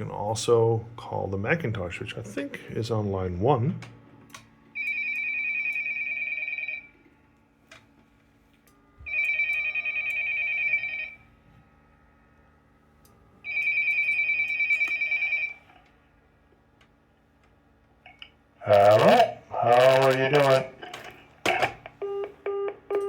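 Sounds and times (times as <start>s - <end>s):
electronic trilling phone ring: 4.8s - 6.9s, 9.1s - 11.2s, 13.5s - 15.7s.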